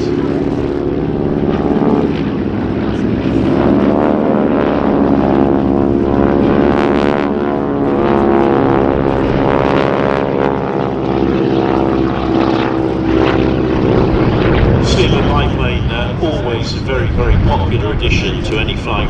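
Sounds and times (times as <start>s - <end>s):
propeller aircraft flying past: 0.0s - 19.0s.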